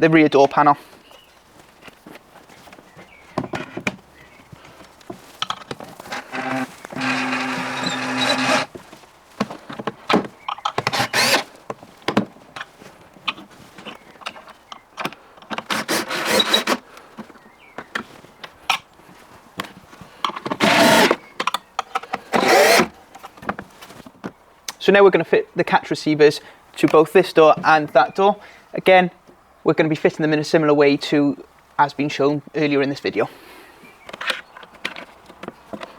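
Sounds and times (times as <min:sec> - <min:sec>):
wooden panels clicking and knocking: 0:05.1 - 0:08.8, 0:09.4 - 0:11.5
cordless power driver running: 0:06.0 - 0:08.7, 0:10.8 - 0:11.5, 0:15.7 - 0:16.8, 0:20.6 - 0:21.2, 0:22.4 - 0:22.9.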